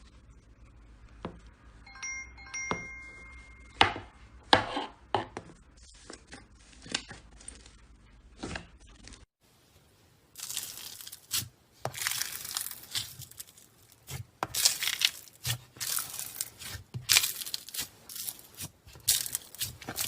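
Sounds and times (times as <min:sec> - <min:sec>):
two-note chime: 0:01.8 - 0:04.0.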